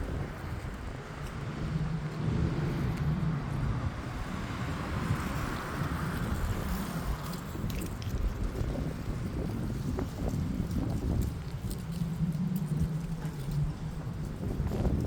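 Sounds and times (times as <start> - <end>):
strong wind gusting: 0.0 - 15.0
wind buffeting microphone: 0.0 - 15.0.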